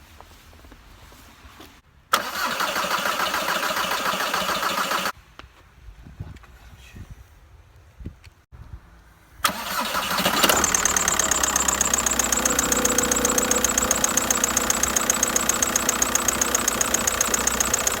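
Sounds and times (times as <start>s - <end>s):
diesel engine cranking and idling: 2.1s - 5.2s, 9.4s - 18.0s.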